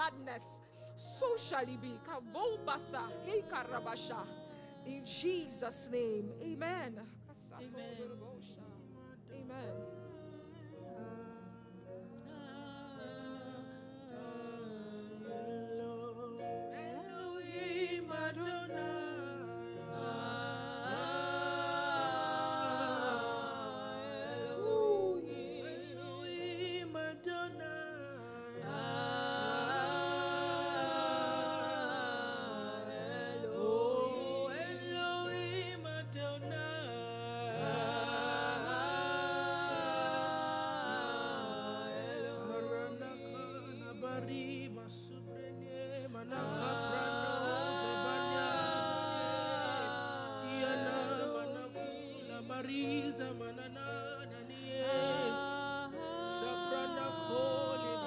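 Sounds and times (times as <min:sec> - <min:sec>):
person singing held phrases: 0:00.0 - 0:08.8.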